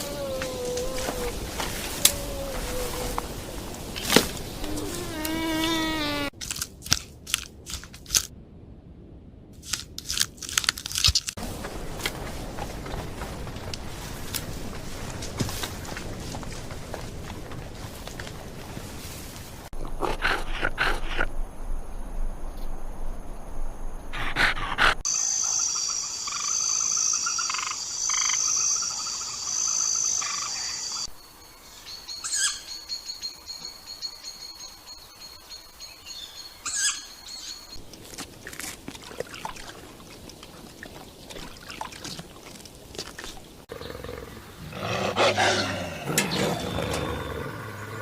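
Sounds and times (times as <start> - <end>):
animal calls: 43.7 - 48.0.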